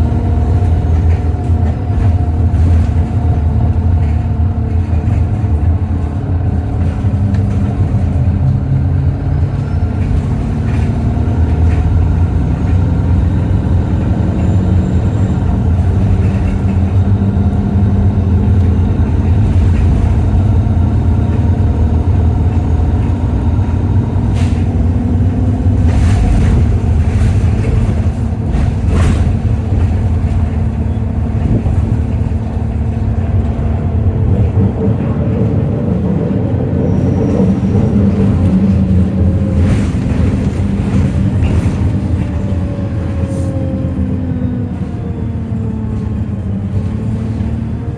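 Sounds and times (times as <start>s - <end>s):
bus diesel engine droning: 0.0s - 47.9s.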